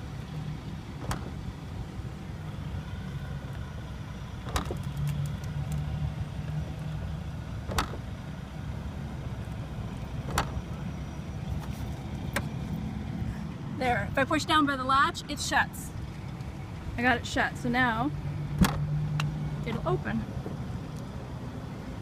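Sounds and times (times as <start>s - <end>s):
liftgate latch clicks: 7.7s - 8.0s, 18.6s - 19.3s.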